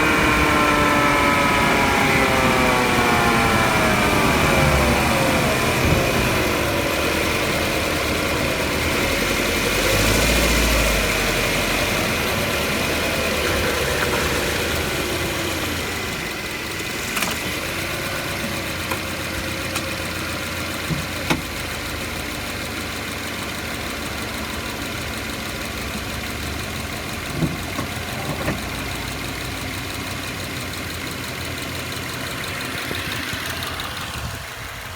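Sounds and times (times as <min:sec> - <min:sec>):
drivetrain whining: 0:00.0 - 0:34.9.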